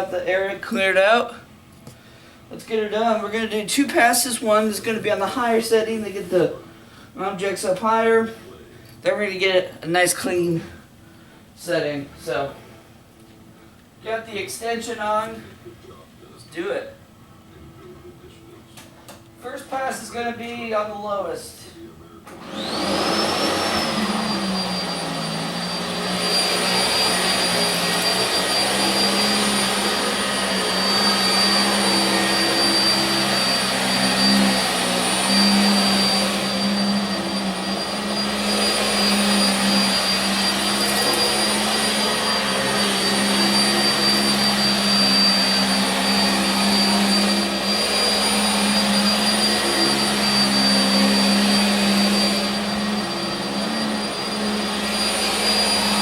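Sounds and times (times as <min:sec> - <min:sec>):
vacuum cleaner on carpet: 0:02.6 - 0:06.5, 0:22.3 - 0:56.0.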